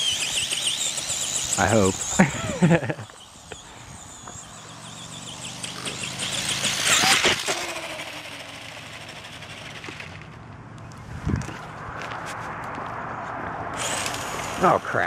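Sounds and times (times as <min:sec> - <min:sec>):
electric motor hum: 0:00.0 - 0:10.4, 0:13.7 - 0:14.9
tyres rushing over ground: 0:00.0 - 0:10.6, 0:11.3 - 0:15.0.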